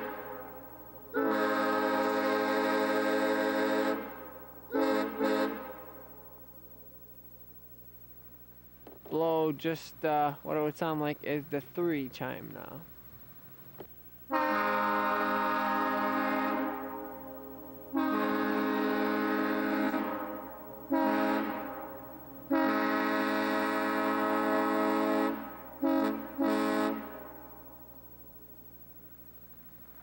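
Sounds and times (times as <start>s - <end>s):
train horn blasts: 0.0s - 6.5s, 14.3s - 28.0s.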